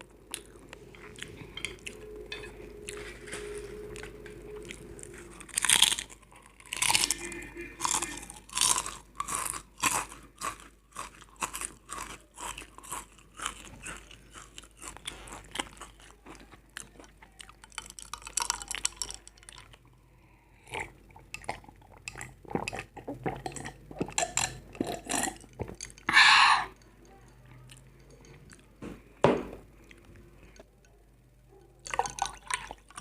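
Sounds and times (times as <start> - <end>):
crisp food crunching: 0.0 - 20.0.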